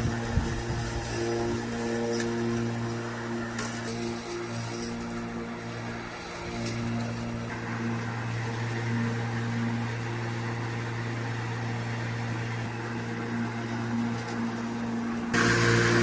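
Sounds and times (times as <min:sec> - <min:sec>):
electric lawnmower humming: 0:00.0 - 0:16.0
loud rushing noise: 0:15.3 - 0:16.0.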